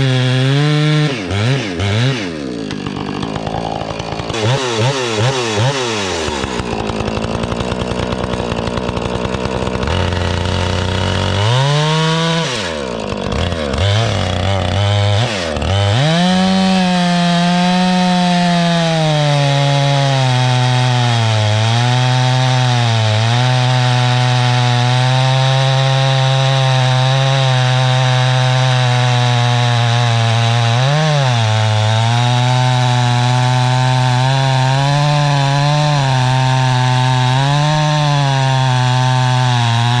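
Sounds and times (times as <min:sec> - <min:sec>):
chainsaw revving and cutting wood: 0:00.0 - 0:40.0.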